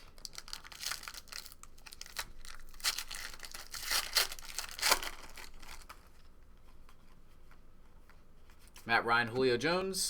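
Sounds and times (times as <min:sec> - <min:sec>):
card pack wrapper tearing: 0:00.1 - 0:06.0.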